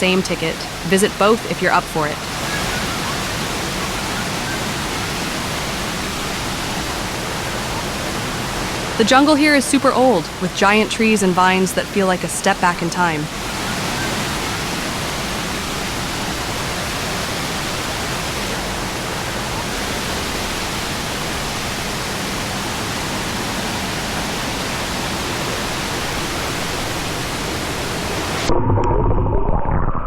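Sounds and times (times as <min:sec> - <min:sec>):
water rushing over rocks: 0:00.0 - 0:28.6.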